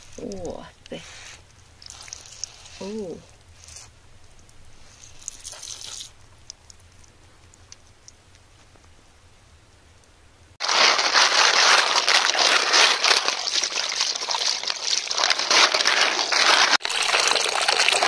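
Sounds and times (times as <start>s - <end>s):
water gushing: 10.6s - 18.0s.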